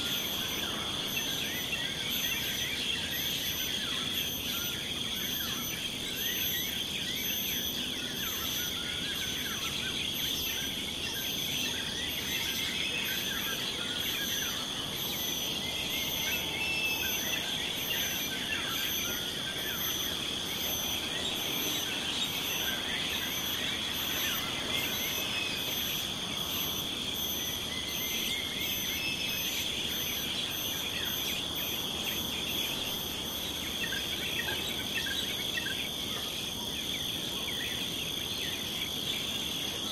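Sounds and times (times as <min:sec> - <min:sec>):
insect drone: 0:00.0 - 0:39.9
pulsing high insect chirp: 0:00.0 - 0:39.9.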